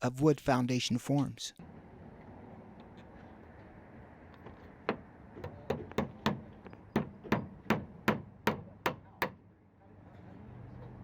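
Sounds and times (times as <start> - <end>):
sharp knocks: 4.9 - 9.4.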